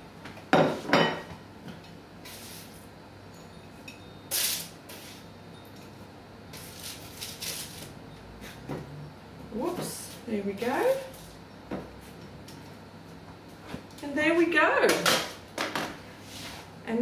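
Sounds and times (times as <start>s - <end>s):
pastries scraping on baking tray: 16.1s - 16.7s.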